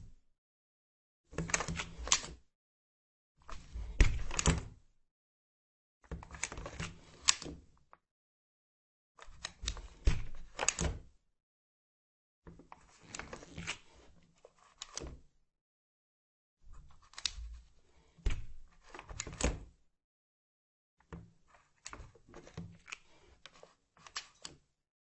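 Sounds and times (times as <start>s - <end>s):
wooden door opening and closing: 3.6s - 4.8s, 10.0s - 11.1s.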